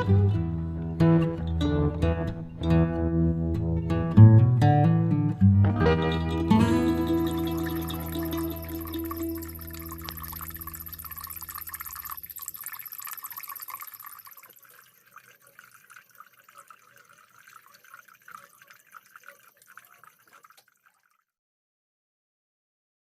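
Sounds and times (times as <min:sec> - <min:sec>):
water trickling and dripping: 0:06.5 - 0:21.4.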